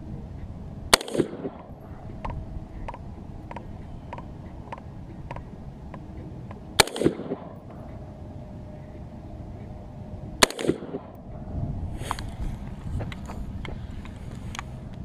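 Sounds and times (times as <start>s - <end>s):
gunshots with echo: 0.9s - 1.8s, 6.8s - 7.8s, 10.4s - 11.2s.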